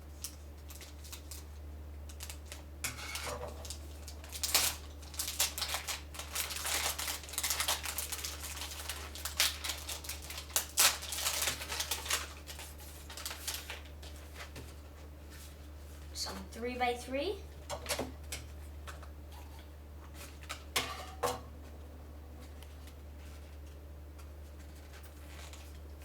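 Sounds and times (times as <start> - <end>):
low electrical hum: 0.0 - 26.0
packaging rustling and crinkling: 0.2 - 15.7, 22.4 - 26.0.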